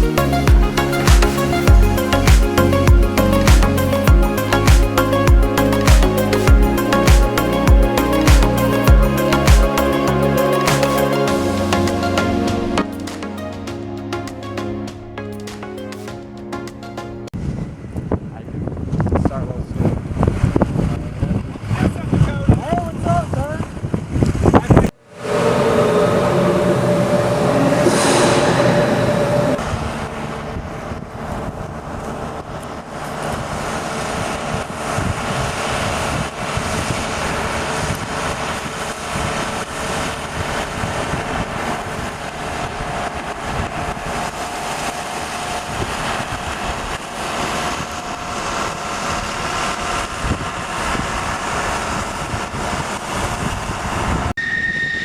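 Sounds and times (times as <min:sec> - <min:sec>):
jet engine roaring: 0:25.0 - 0:30.4.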